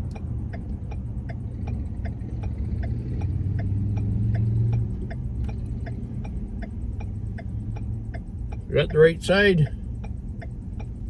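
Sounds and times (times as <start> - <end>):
vehicle engine idling: 4.8 - 11.0.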